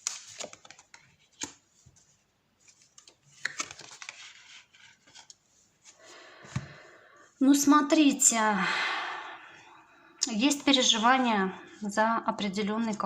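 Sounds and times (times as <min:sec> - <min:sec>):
cards being shuffled: 0:00.0 - 0:02.0, 0:02.6 - 0:06.0.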